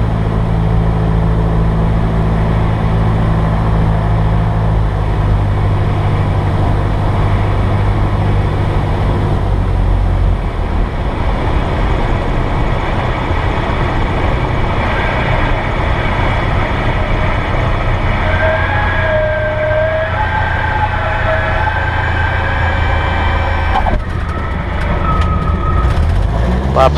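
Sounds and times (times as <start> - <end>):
aircraft engine and propeller: 0.0 - 18.1, 23.2 - 26.9
stall warning horn tone: 14.8 - 26.1.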